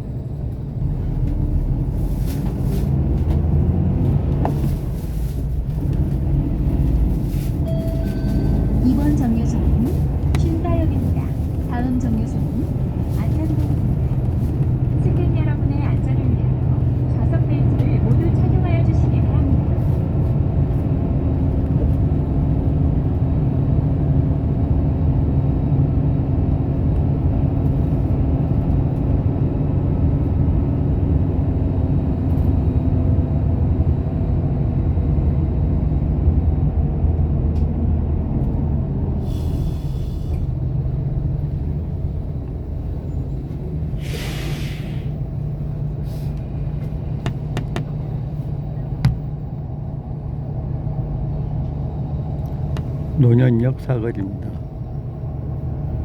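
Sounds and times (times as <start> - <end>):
bus engine and road rumble: 0.0 - 56.0
air brakes hissing: 39.2 - 40.6, 43.9 - 45.3, 46.0 - 46.7.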